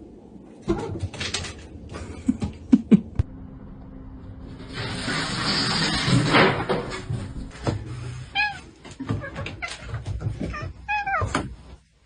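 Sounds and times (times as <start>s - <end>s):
cat meowing: 8.3s - 9.9s, 10.5s - 11.5s.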